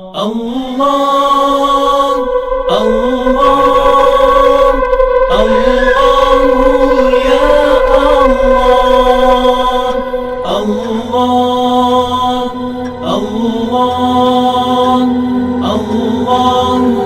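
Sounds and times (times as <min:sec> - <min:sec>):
chanting in long held tones: 0:00.0 - 0:17.0.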